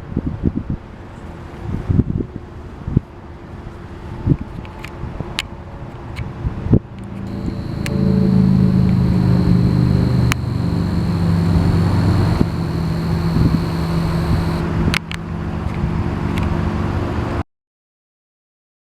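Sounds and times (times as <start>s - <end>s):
engine idling hum: 7.3s - 14.6s
sharp clicks: 7.3s - 14.6s.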